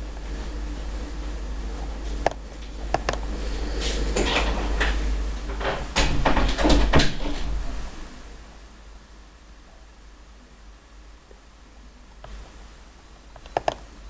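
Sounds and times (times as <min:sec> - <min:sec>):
knocks and clattering bangs: 0:04.2 - 0:07.8.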